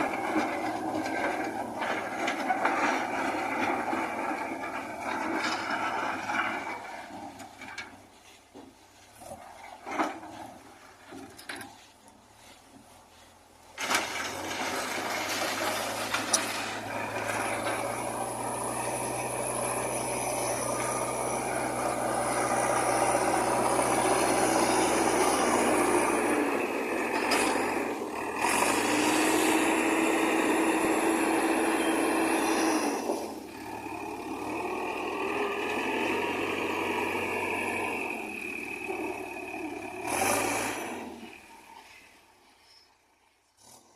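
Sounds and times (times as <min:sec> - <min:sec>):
diesel engine under load: 0:00.0 - 0:43.9.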